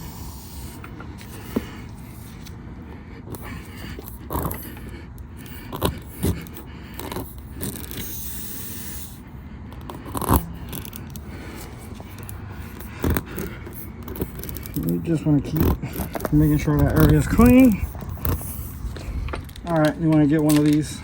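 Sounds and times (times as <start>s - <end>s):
air hissing from tire: 0.0s - 2.4s, 7.3s - 14.4s, 16.3s - 19.4s
tool scraping in tire hole: 9.8s - 20.2s.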